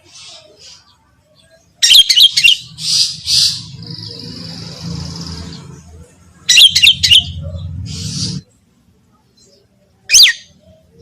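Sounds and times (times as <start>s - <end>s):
bird chattering and rasping calls: 1.8s - 5.8s, 6.4s - 8.4s.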